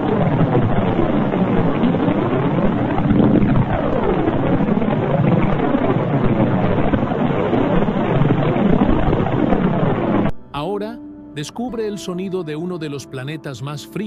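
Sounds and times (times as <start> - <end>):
swooping electronic hum: 0.0 - 10.6.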